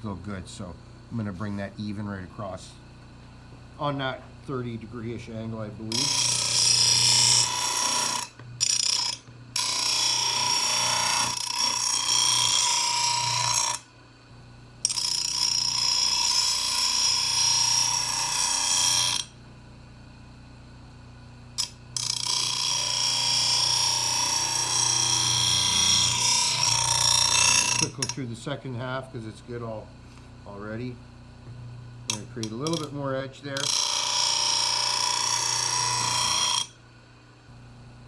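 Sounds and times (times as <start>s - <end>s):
grinder motor humming: 0.0s - 13.8s, 21.6s - 36.8s
grinder wheel grinding steel blade: 3.8s - 13.9s, 14.8s - 19.4s, 21.6s - 31.0s, 32.0s - 36.8s.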